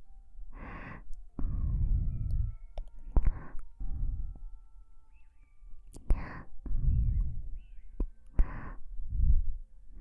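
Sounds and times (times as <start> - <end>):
breath into microphone: 0.5 - 2.6, 8.4 - 9.4
breathy exhale: 0.6 - 2.0
kiss click: 2.8 - 3.0.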